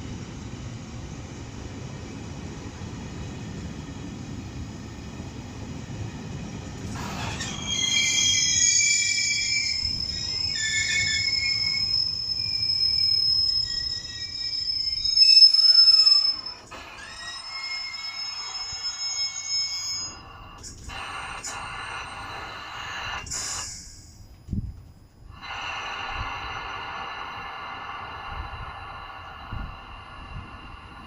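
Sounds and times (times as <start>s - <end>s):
train wheels rumbling on rails: 0.0s - 31.0s
high-pitched wheel and brake squeal: 6.9s - 24.2s.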